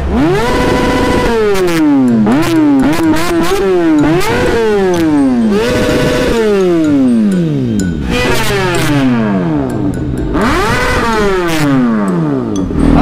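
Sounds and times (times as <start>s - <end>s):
motorcycle engine revving: 0.0s - 13.0s.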